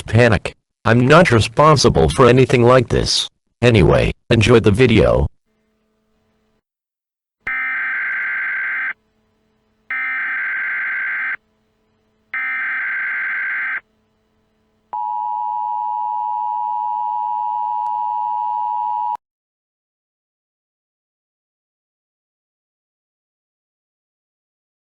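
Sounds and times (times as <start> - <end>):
steady two-note alert tone: 7.5 - 14.8.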